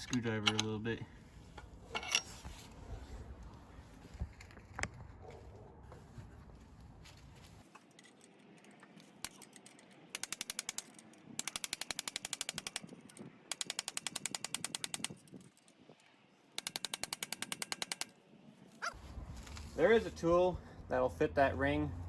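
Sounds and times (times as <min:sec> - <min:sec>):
screwdriver tapping on metal ring: 0:00.0 - 0:00.8, 0:09.2 - 0:15.5, 0:16.6 - 0:18.1.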